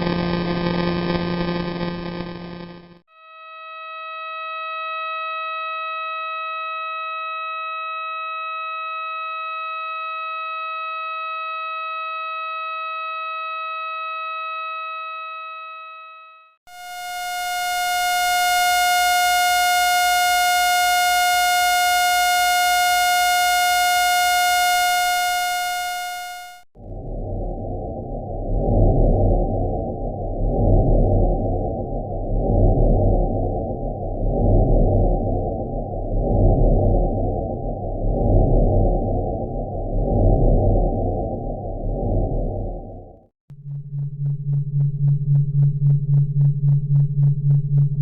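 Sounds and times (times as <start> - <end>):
buzzy electronic tone: 0.0 - 3.0, 16.7 - 26.7
buzzy tone with overtones: 0.0 - 3.0, 16.7 - 46.5
clear electronic tone: 12.1 - 26.9
dull low rumbling noise: 26.8 - 48.0.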